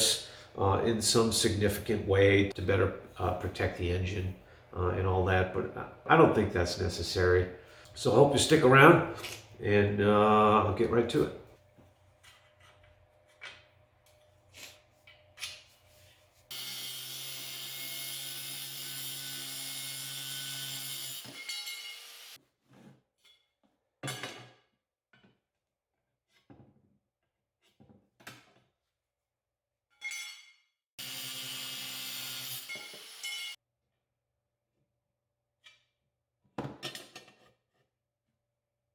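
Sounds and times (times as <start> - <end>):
power tool motor running: 31.0 - 33.6.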